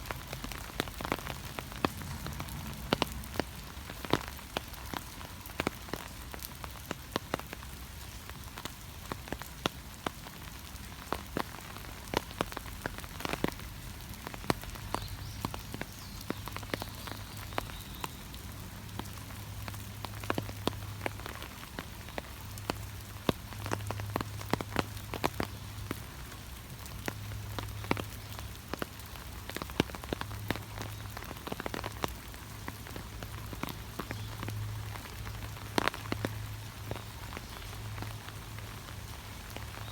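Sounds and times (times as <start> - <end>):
steady rain with drop ticks: 0.0 - 39.9
low hum: 1.4 - 4.4.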